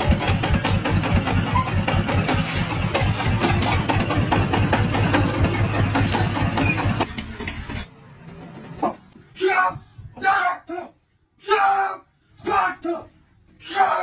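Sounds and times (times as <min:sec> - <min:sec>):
large engine clattering: 0:00.0 - 0:09.1.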